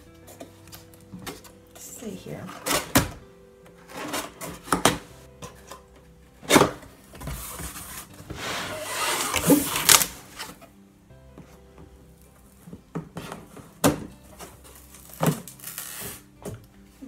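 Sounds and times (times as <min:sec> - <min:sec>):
cardboard rustling and scraping: 0:03.8 - 0:05.9, 0:06.5 - 0:10.6.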